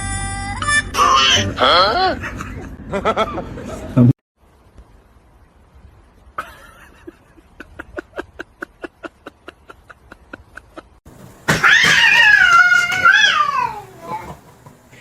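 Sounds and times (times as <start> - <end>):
cat meowing: 11.6 - 13.9.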